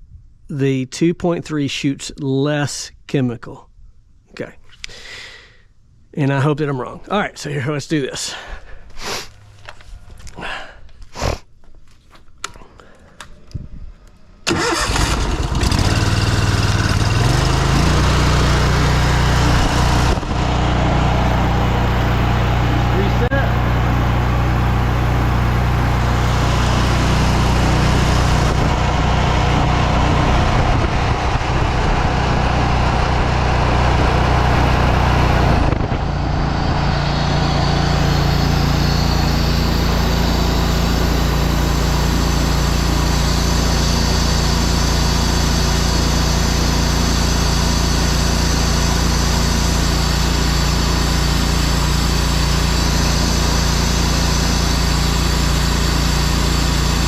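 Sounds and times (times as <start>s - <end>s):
pressure washer engine running: 14.5s - 57.0s.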